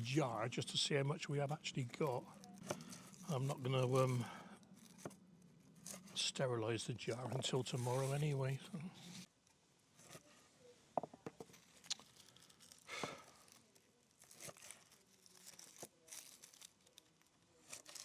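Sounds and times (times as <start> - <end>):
papery skins rustling: 11.5 - 18.0.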